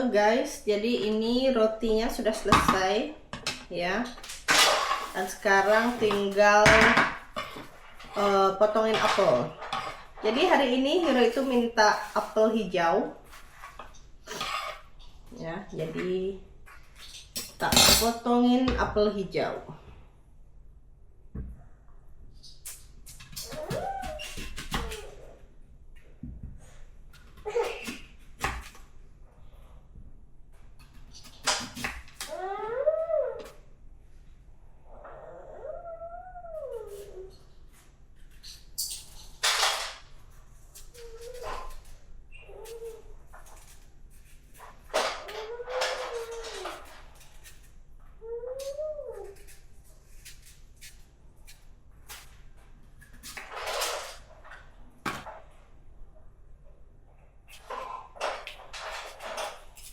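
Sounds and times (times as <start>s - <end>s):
utensils and dishes clinking: 17.1s - 18.2s.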